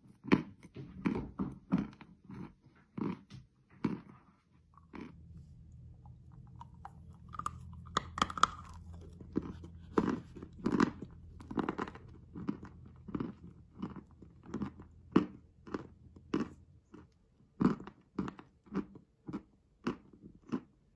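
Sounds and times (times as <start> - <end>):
candy crunching while chewed: 0.1 - 20.8.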